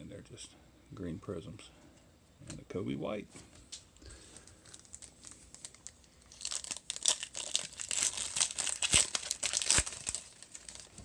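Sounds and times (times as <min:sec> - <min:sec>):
card pack wrapper crinkling and tearing: 0:04.3 - 0:11.0.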